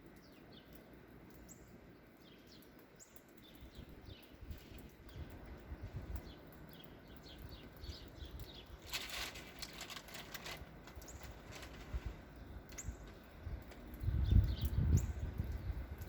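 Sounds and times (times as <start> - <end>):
small birds chirping: 0.0 - 16.0
wind rumble on microphone: 3.5 - 16.0.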